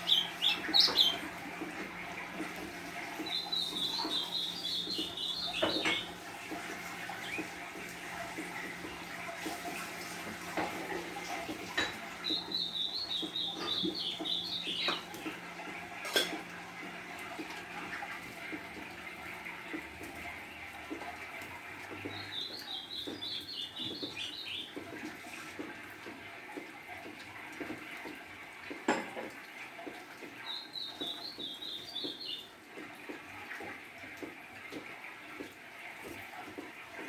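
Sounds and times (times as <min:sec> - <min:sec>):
bird singing warbled phrases: 0:00.0 - 0:02.2, 0:03.0 - 0:06.2, 0:07.0 - 0:07.6, 0:12.2 - 0:15.2, 0:22.1 - 0:24.8, 0:30.4 - 0:32.5.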